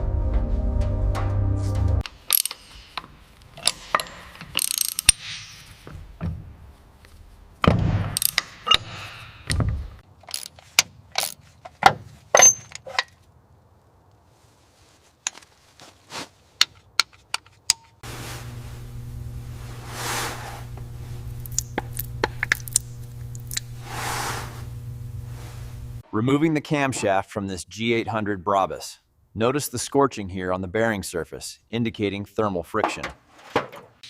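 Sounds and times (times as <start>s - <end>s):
metallic clicks and clanks: 2.0s - 5.7s, 8.1s - 9.6s, 10.2s - 13.2s.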